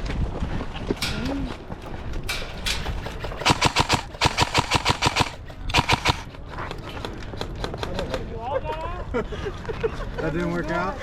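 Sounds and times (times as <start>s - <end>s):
airsoft rifle firing bursts: 2.8s - 6.3s.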